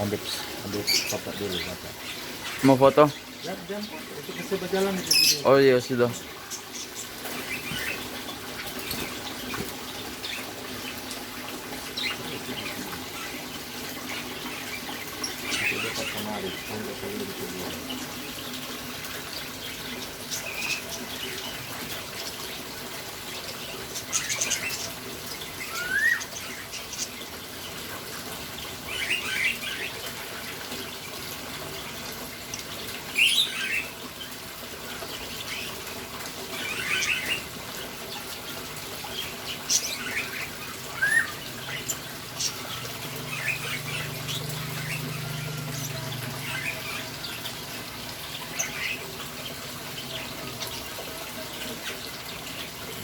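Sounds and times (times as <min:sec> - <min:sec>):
bird chirping and squawking: 0:00.0 - 0:21.8, 0:23.4 - 0:27.3, 0:28.8 - 0:30.5, 0:36.4 - 0:38.4, 0:39.0 - 0:52.8.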